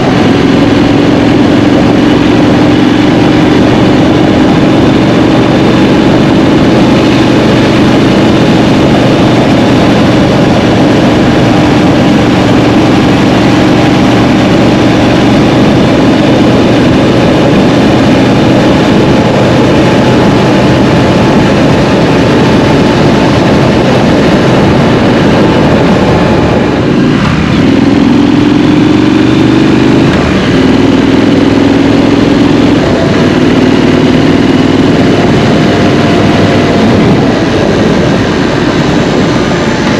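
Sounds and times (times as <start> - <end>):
motorcycle engine running: 0.0 - 39.9
wind and road noise: 0.0 - 39.9.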